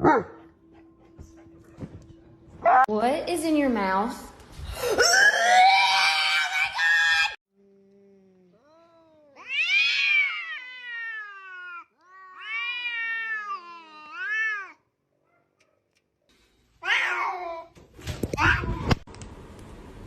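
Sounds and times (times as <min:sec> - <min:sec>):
cat meowing: 0:08.6 - 0:14.8.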